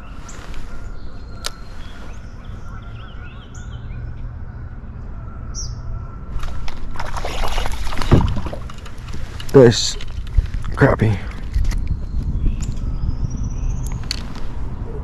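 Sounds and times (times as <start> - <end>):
rustling noise: 0.0 - 2.8, 7.7 - 10.7, 13.9 - 14.9
small birds chirping: 0.0 - 4.3, 9.2 - 15.0.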